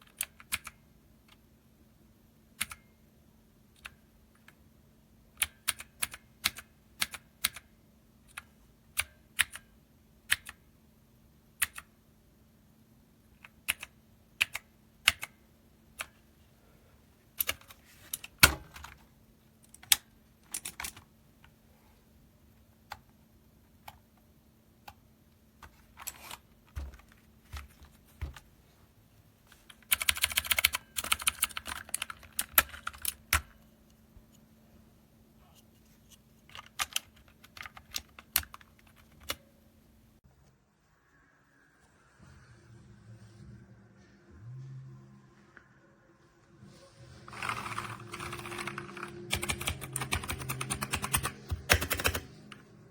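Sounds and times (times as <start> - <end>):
mechanical keyboard typing: 0.0 - 1.4, 5.4 - 7.7, 10.3 - 10.6, 13.4 - 15.4, 17.4 - 19.0, 19.7 - 21.1, 29.7 - 33.6, 36.5 - 39.4, 47.3 - 52.6.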